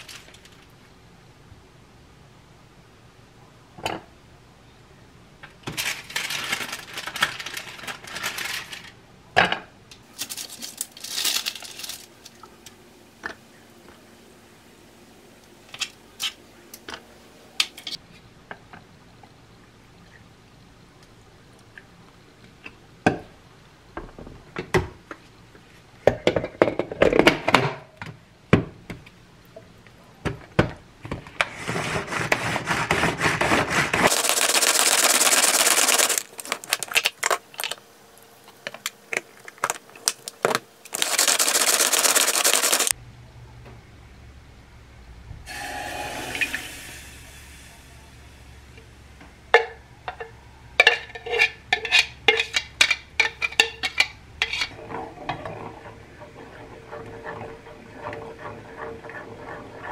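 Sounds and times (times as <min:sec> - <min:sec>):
utensils and cups clicking: 0:34.1 - 0:36.3, 0:40.9 - 0:42.9
rushing noise bursts: 0:45.4 - 0:48.7.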